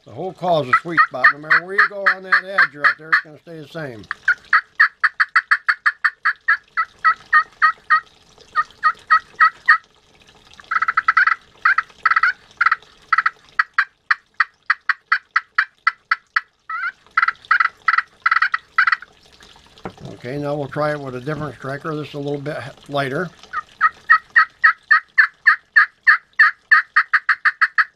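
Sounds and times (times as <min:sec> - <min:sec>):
turkey call yelps: 0:00.6 - 0:03.3, 0:04.1 - 0:09.8, 0:10.7 - 0:19.1, 0:23.5 - 0:27.9.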